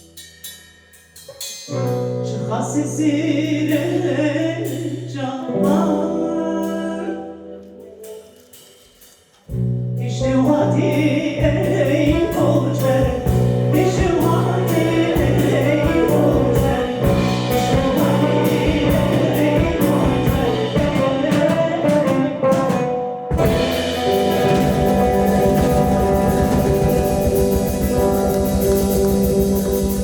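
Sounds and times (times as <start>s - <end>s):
person singing: 2.2s - 8.3s, 10.0s - 30.0s
live band playing: 11.0s - 30.0s
drums beating: 11.4s - 30.0s.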